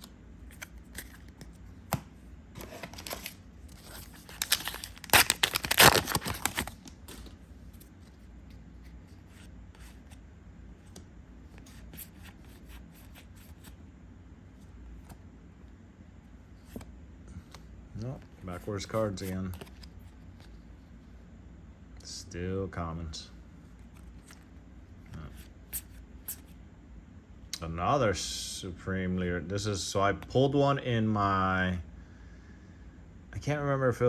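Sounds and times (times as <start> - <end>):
soft clicks of cards handled: 0.0 - 2.1, 16.6 - 20.7, 23.7 - 26.6
foil wrapper tearing and crinkling: 2.8 - 7.2.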